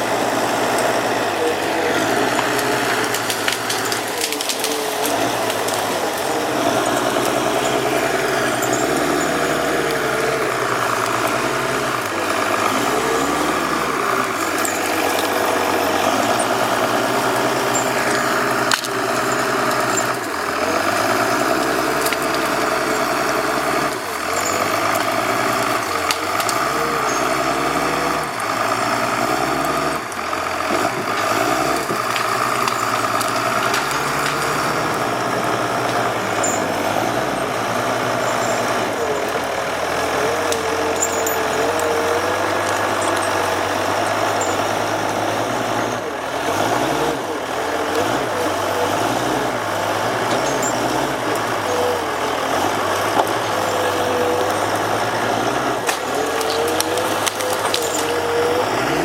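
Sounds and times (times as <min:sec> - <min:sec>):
heavy diesel engine revving: 0:00.0 - 0:59.0.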